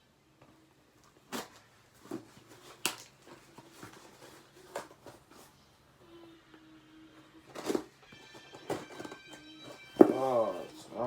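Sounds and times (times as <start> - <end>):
cardboard rustling: 1.2 - 5.6, 7.5 - 11.0.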